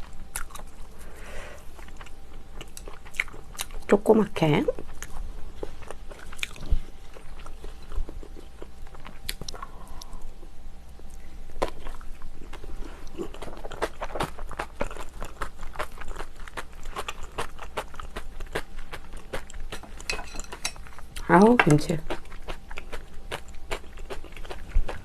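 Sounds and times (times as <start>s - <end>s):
person chewing with wet clicks: 0.0s - 0.9s, 1.7s - 4.0s, 4.7s - 25.0s.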